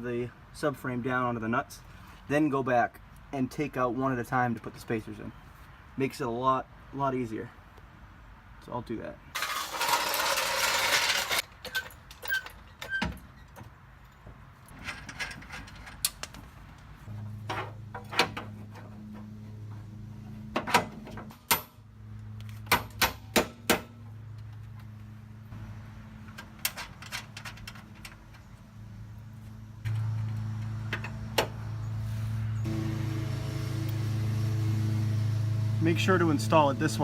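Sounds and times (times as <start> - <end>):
metal bolts and tools clinking: 9.4 - 16.5, 26.3 - 28.5.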